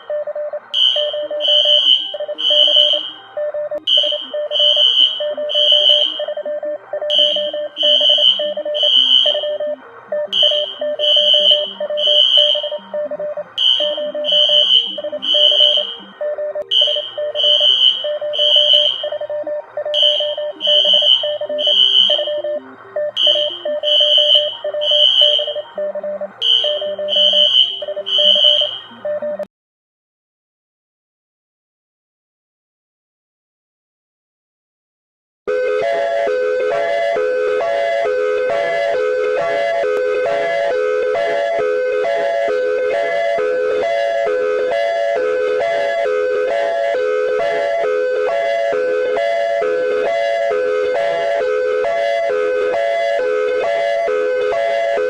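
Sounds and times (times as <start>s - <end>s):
alarm high beeps: 0.0s - 29.5s.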